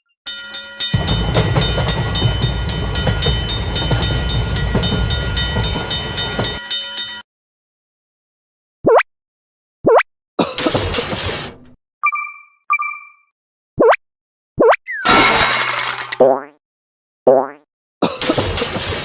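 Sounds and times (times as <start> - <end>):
passing train rumble and clatter: 0.9 - 6.6.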